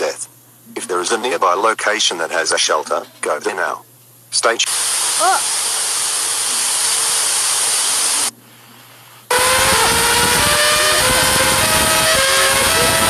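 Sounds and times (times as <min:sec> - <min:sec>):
loud static hiss: 0:00.0 - 0:13.0
warbling distorted tones: 0:09.3 - 0:13.0.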